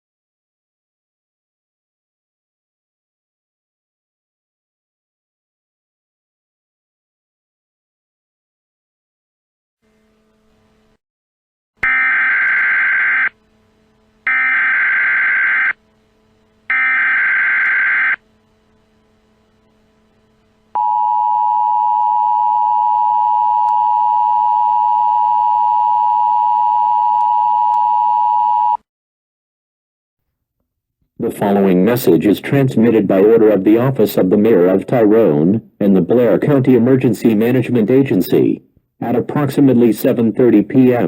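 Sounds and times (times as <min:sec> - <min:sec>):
buzzy digital data tones: 0:11.8 - 0:21.9.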